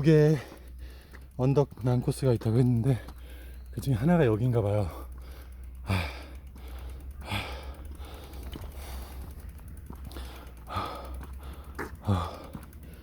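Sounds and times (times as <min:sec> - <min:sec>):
faint rapid ticking: 0:00.0 - 0:13.0
man breathing heavily: 0:00.2 - 0:01.4, 0:03.0 - 0:03.8, 0:04.8 - 0:13.0.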